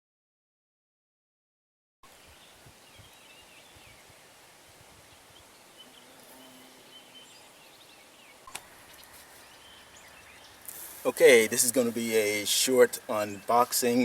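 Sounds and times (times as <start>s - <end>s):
distant birds chirping: 2.1s - 14.0s
faint background noise: 2.1s - 14.0s.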